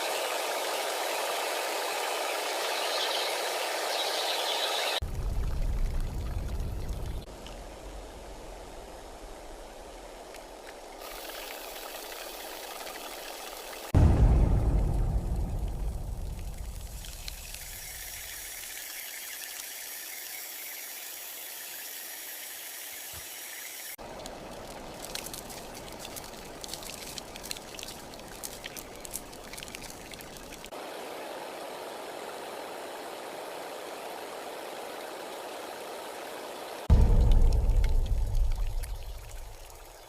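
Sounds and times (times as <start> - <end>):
water rushing and hissing: 0.0 - 40.0
sharp crackles and pops: 13.9 - 18.3, 24.0 - 30.7, 36.9 - 40.0.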